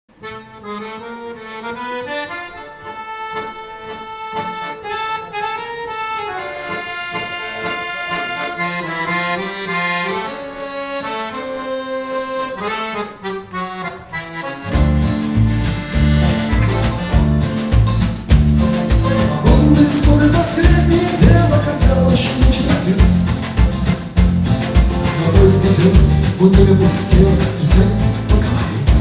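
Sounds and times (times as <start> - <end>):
reed-like melody instrument: 0.1 - 29.0
sustained chords: 2.5 - 29.0.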